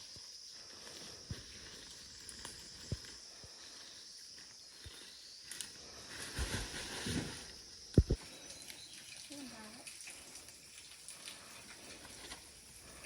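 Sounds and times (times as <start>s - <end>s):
footsteps rustling in undergrowth: 0.0s - 9.6s.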